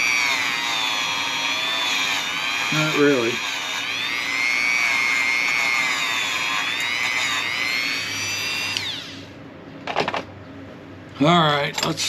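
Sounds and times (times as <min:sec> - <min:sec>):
rotary tool whining: 0:00.0 - 0:09.4.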